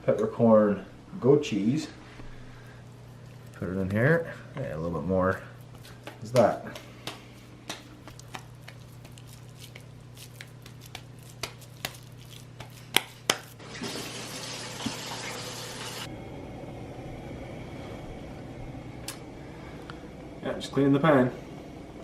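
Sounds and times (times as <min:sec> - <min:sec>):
kitchen tap running water: 0:13.6 - 0:16.1.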